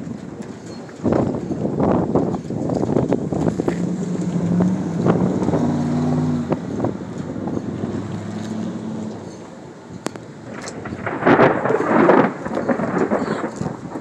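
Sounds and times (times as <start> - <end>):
gusty wind: 0.0 - 14.0
loud rumble: 1.1 - 14.0.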